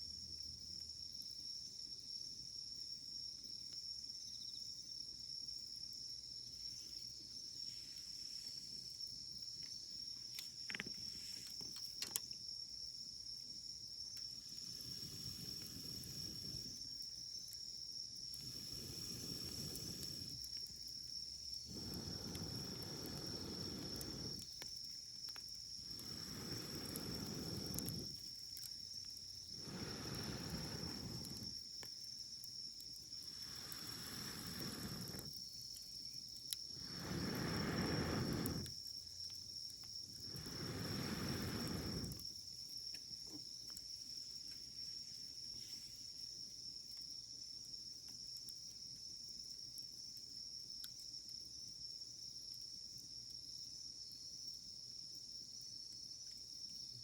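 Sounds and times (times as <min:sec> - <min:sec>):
insect trill: 0:00.0 - 0:57.0
campfire crackling: 0:06.4 - 0:45.5.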